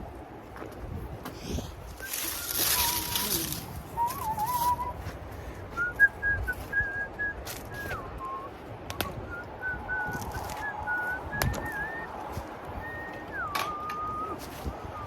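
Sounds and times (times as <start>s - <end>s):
person whistling a tune: 2.0s - 5.1s, 5.7s - 12.2s, 12.8s - 15.0s.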